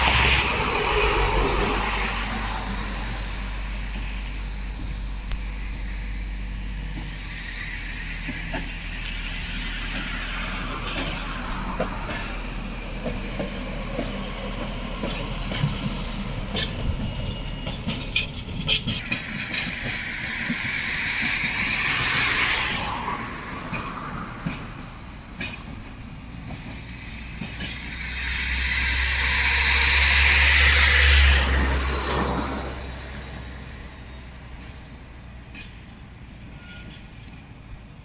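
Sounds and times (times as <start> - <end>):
low engine hum: 0.0 - 35.2
train rolling on rails: 0.0 - 38.0
wheel clicks over rail joints: 9.7 - 22.6.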